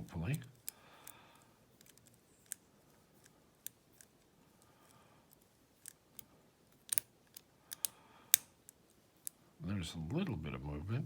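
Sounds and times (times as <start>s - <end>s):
lock picking clicks: 5.3s - 9.4s.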